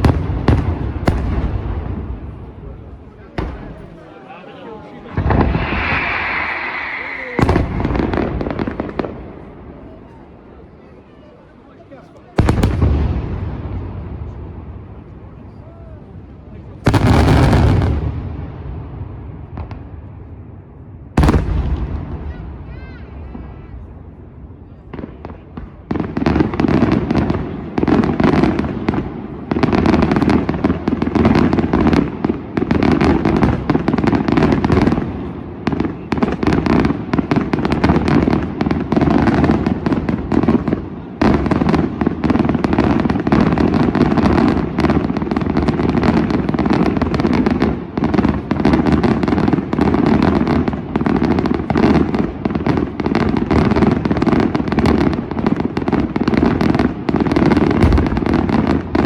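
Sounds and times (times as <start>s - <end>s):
firecrackers crackling: 0.0s - 59.0s
fireworks bangs: 0.0s - 59.0s.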